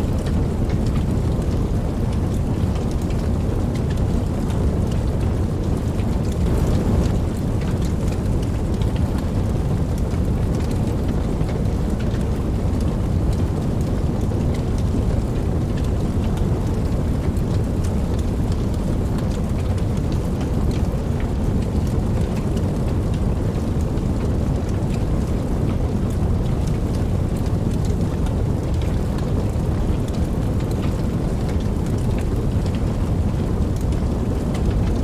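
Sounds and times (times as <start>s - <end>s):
heavy rain pattering: 0.0s - 35.0s
deep low rumble: 5.9s - 9.7s.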